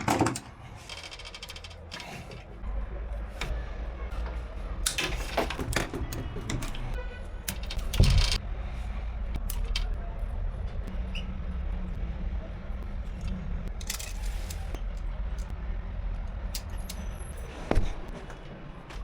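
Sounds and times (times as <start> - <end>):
hard objects clicking and rattling: 0.0 - 2.6, 13.2 - 15.6
steady low rumble: 7.0 - 19.0.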